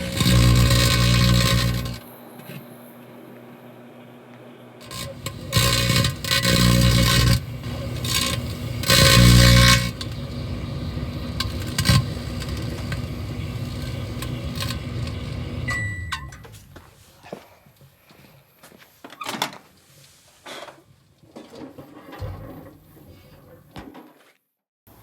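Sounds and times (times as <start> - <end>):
crackling of electrical arcing: 0.0 - 3.5, 4.3 - 15.8
microwave oven humming: 0.0 - 16.6
short beep: 15.7 - 16.5.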